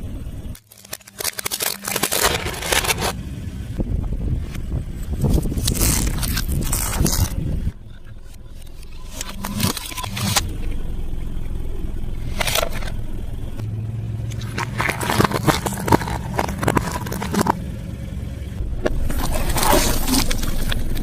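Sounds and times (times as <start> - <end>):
steady low hum: 0.0 - 21.0
clicks and scrapes: 0.6 - 3.2, 5.2 - 10.4, 12.2 - 13.0, 14.3 - 17.6, 18.8 - 21.0.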